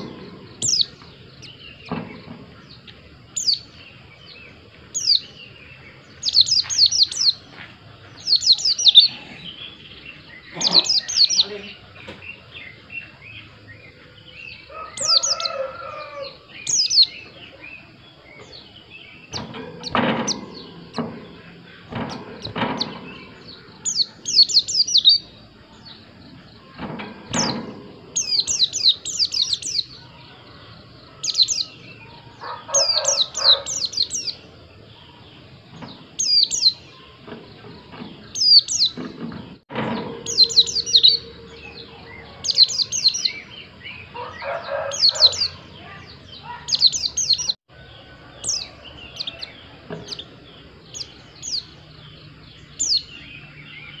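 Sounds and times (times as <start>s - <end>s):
bird chirping rapidly: 0.0s - 7.5s, 8.2s - 17.3s, 18.1s - 30.1s, 31.2s - 35.5s, 36.1s - 37.2s, 37.8s - 39.1s, 39.8s - 47.6s
lower warbled bird calls: 0.0s - 25.4s, 26.0s - 35.2s, 39.8s - 47.6s
dull thumps: 19.3s - 23.8s.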